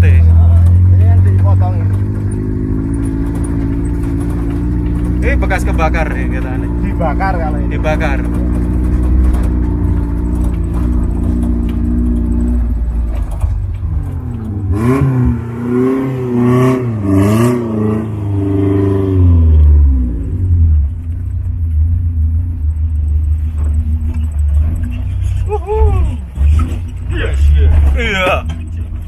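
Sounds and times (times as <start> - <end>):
knocks and rattles: 0.0 - 15.4, 22.6 - 29.0
off-road vehicle engine revving: 0.0 - 29.0.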